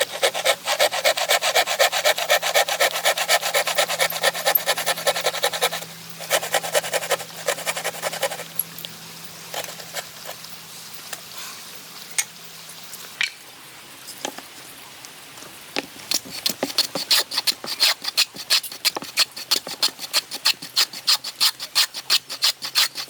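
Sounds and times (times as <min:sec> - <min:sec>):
hand tool working wood: 0:00.0 - 0:08.6, 0:16.1 - 0:23.0.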